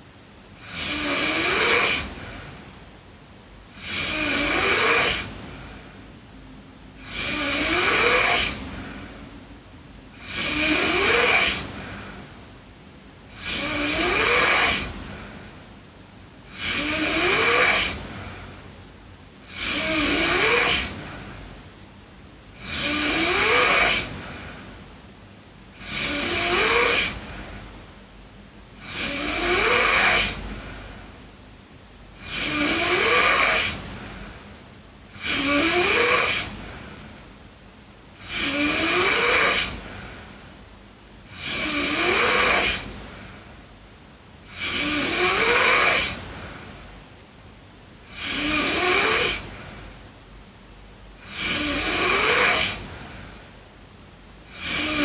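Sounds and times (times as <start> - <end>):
girl snoring: 0.6 - 2.7, 3.7 - 6.0, 7.0 - 9.3, 10.1 - 12.4, 13.3 - 15.7, 16.4 - 18.7, 19.4 - 21.6, 22.5 - 24.8, 25.7 - 27.8, 28.8 - 31.0, 32.1 - 34.5, 35.1 - 37.2, 38.1 - 40.4, 41.2 - 43.6, 44.4 - 46.9, 48.0 - 50.0, 51.2 - 53.4, 54.5 - 55.0.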